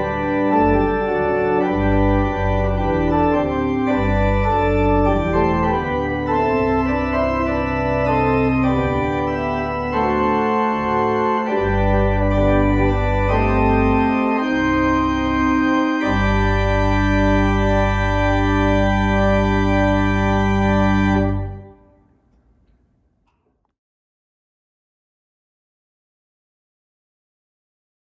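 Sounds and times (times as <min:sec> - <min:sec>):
deep bass notes: 0:00.0 - 0:21.7
organ sustained chords: 0:00.0 - 0:22.4.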